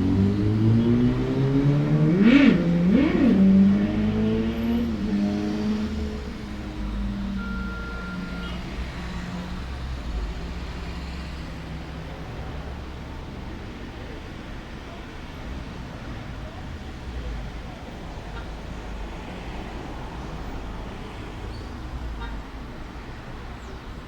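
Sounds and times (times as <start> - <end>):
vehicle engine revving: 0.0 - 12.4.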